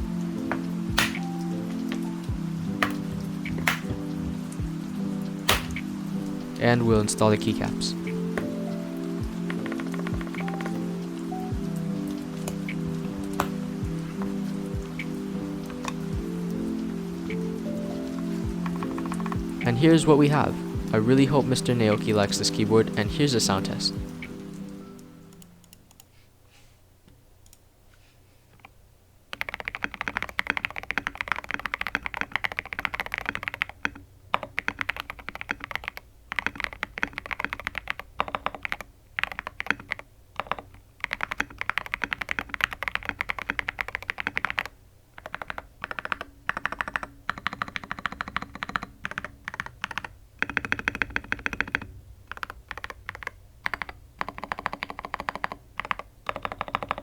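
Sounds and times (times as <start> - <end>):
deep thocky keyboard typing: 0.0 - 4.7, 5.4 - 5.9, 6.5 - 16.4, 17.3 - 26.1, 28.6 - 57.0.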